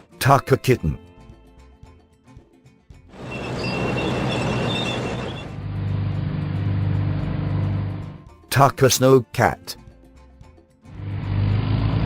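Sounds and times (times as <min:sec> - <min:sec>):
vehicle engine droning: 0:03.2 - 0:08.2, 0:10.9 - 0:12.0.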